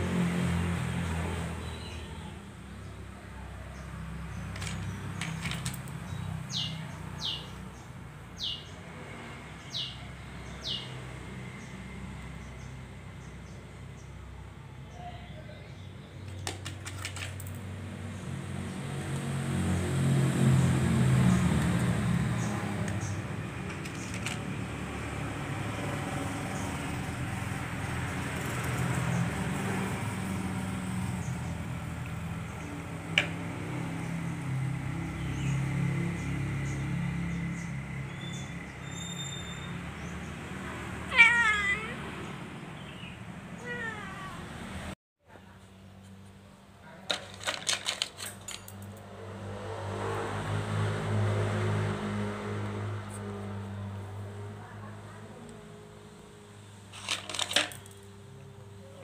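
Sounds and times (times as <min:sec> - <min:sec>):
small bird chirping: 0:03.8 - 0:08.8.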